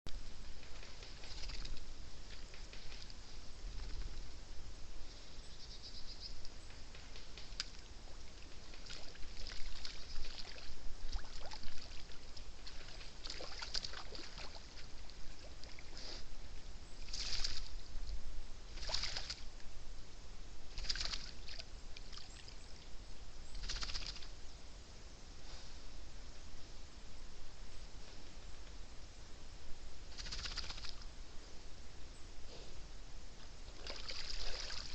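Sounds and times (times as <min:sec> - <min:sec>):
animal splashing in water: 0:08.7 - 0:16.0, 0:17.0 - 0:17.7, 0:18.7 - 0:19.4, 0:20.8 - 0:22.5, 0:33.7 - 0:34.9.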